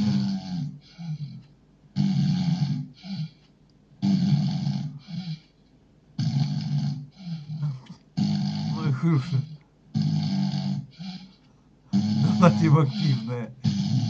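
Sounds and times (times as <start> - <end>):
man snoring loudly: 0.0 - 1.2, 2.0 - 3.3, 4.0 - 5.4, 6.2 - 11.2, 11.9 - 14.0.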